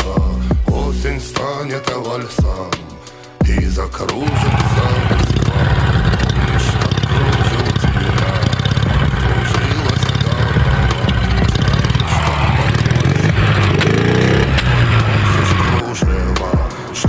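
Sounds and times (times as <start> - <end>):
motorcycle engine running with knock: 4.2 - 16.7.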